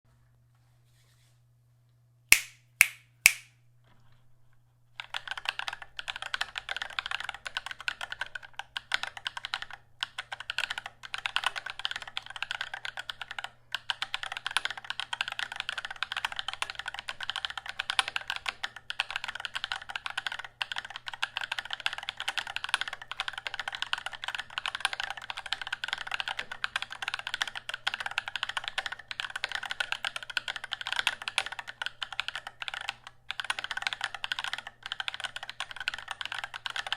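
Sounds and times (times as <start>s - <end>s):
sharp clicks: 2.3s - 3.5s
mechanical keyboard typing: 5.0s - 36.9s.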